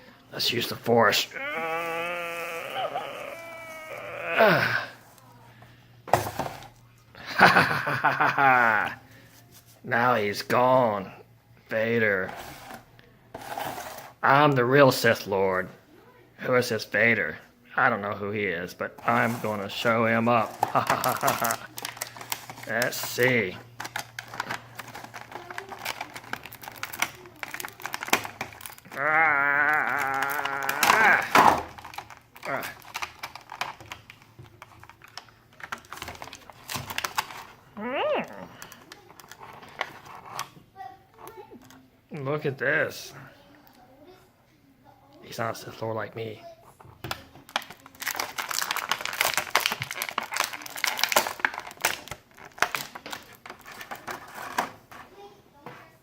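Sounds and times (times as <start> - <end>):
packaging crinkling: 19.0 - 40.5, 47.1 - 54.8.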